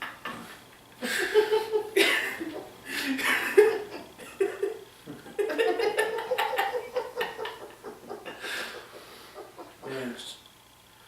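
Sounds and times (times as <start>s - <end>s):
man's stifled laughter: 0.1s - 10.2s.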